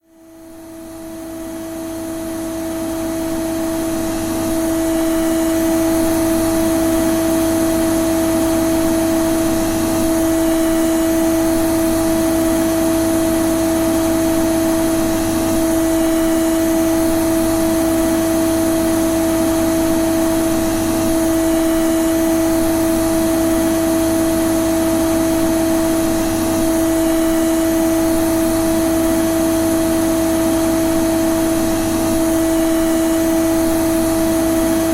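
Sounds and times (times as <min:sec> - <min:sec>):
vacuum cleaner running: 0:00.0 - 0:34.9.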